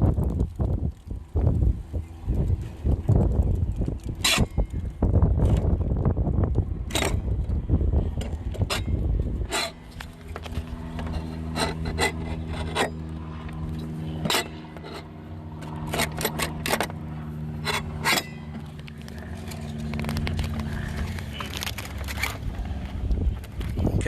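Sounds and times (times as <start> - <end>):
steady low hum: 0.0 - 24.0
metal clicks and scraping: 3.1 - 5.8, 6.8 - 7.6, 8.2 - 17.0, 17.6 - 23.9.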